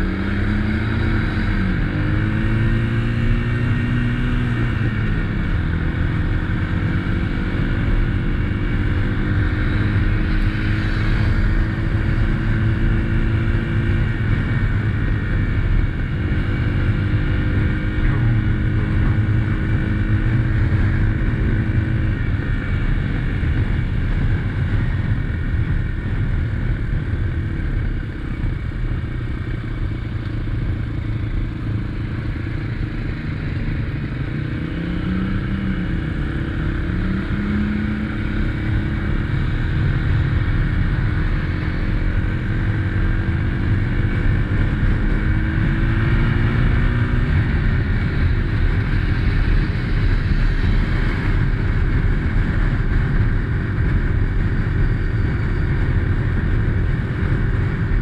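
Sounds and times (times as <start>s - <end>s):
motorcycle engine revving: 0.0s - 58.0s.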